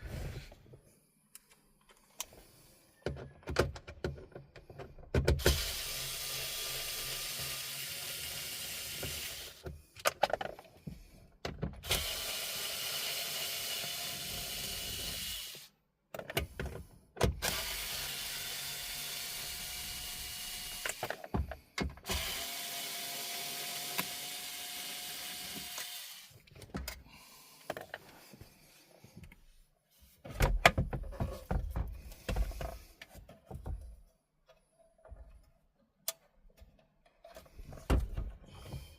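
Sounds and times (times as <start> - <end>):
small electric motor whining: 11.9 - 15.7, 22.1 - 26.4.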